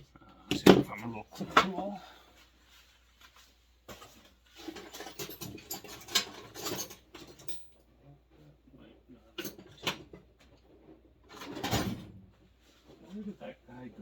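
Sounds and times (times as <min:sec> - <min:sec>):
metal hand tools clinking: 0:05.0 - 0:07.8.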